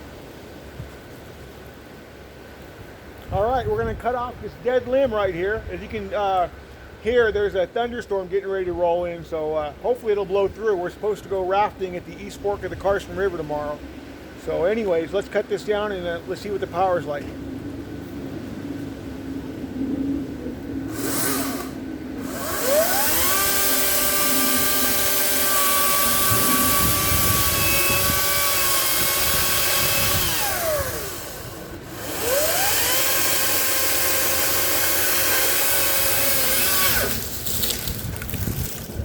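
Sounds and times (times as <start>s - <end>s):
battery chainsaw motor whining: 20.9s - 39.0s.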